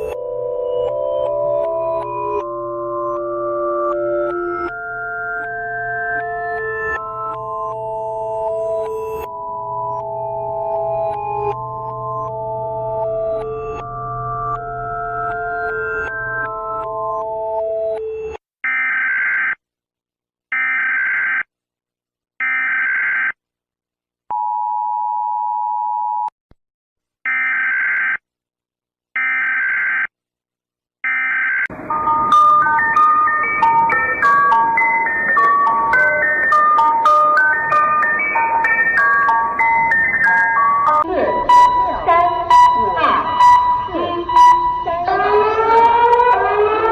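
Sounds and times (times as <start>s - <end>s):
electronic alert tones: 31.7s - 46.8s.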